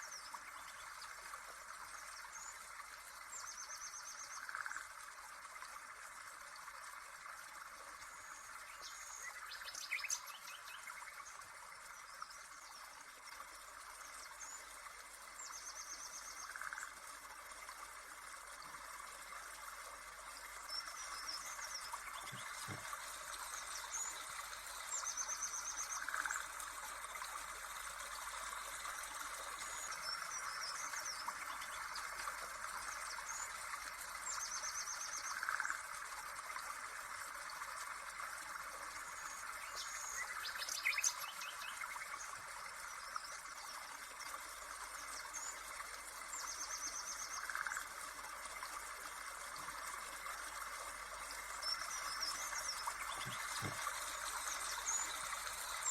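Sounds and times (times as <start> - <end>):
birds chirping: 20.8 - 26.2, 51.8 - 55.9.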